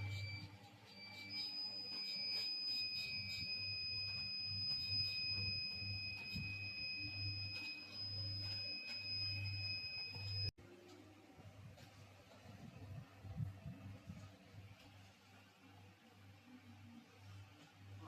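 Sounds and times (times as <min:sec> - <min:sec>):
high-pitched electronic tone: 0:00.0 - 0:10.5.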